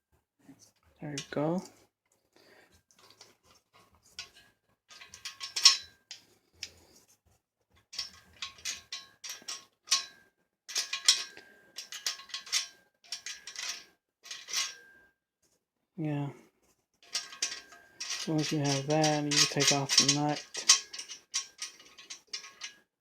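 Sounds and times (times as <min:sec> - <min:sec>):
nut and bolt clicking: 0:04.2 - 0:06.7, 0:08.0 - 0:10.1, 0:10.7 - 0:14.8, 0:17.0 - 0:22.8.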